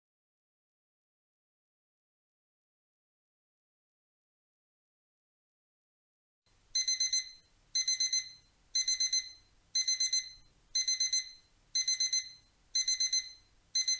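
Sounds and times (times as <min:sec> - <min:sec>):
alarm clock beeping: 0:06.8 - 0:13.9.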